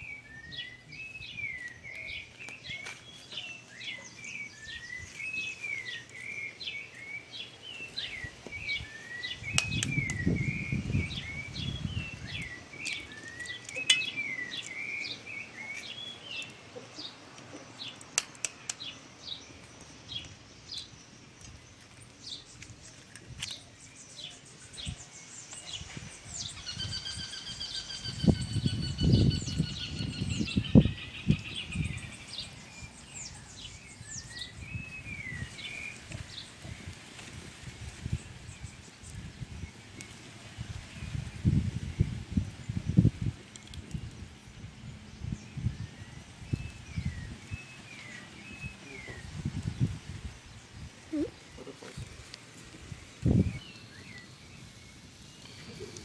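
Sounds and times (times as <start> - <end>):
steady whistling tone: 0.0 - 2.7
small birds chirping: 0.0 - 56.0
sharp clicks: 17.4 - 18.9.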